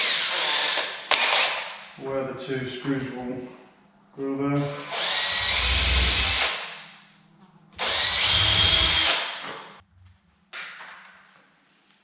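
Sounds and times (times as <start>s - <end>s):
power drill boring into wood: 0.0s - 1.6s, 4.8s - 6.8s, 7.8s - 9.8s.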